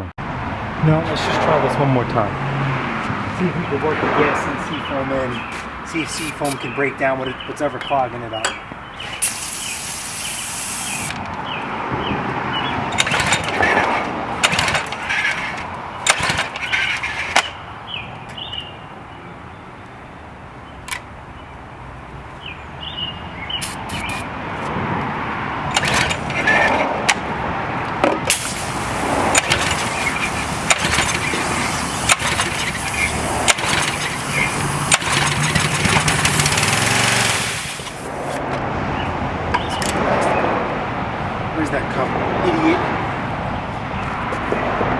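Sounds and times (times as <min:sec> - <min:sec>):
small engine sputtering: 0:09.0 - 0:11.6, 0:12.6 - 0:17.6, 0:25.7 - 0:27.2, 0:28.3 - 0:38.4.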